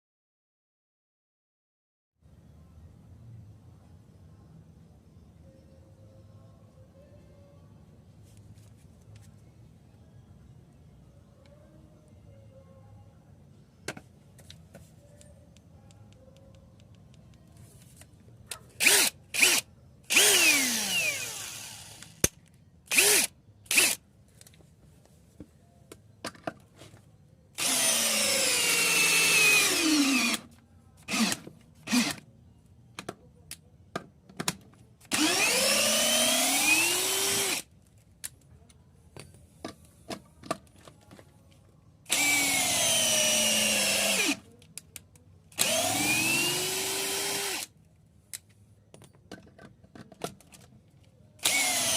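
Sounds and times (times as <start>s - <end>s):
cordless drill motor whine: 18.8s - 22.1s, 22.9s - 24.0s, 27.6s - 30.4s, 31.1s - 32.2s, 35.1s - 37.6s, 42.1s - 44.4s, 45.6s - 47.7s, 51.4s - 51.9s.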